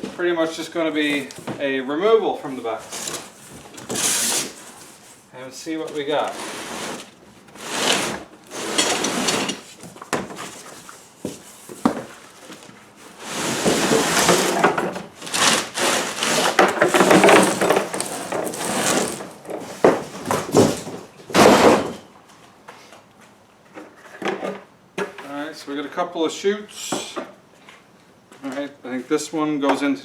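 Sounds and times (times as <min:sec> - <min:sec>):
cardboard box scraping and rustling: 0:02.7 - 0:21.8.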